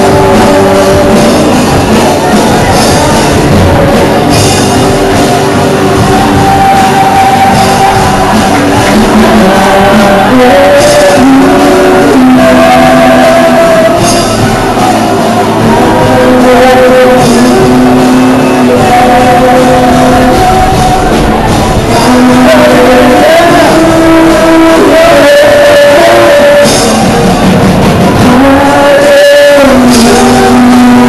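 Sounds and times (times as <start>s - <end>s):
live worship band with singing: 0.0s - 31.0s.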